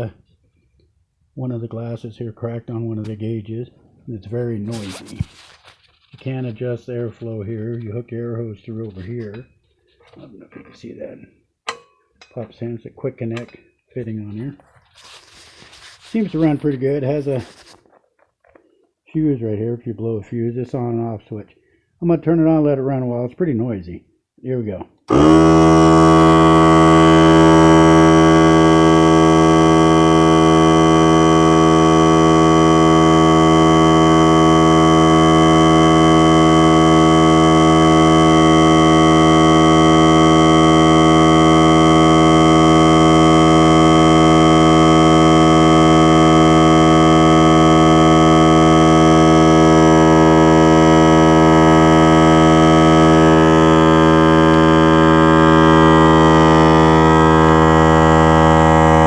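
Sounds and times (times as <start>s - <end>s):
electric air compressor running: 25.1s - 59.0s.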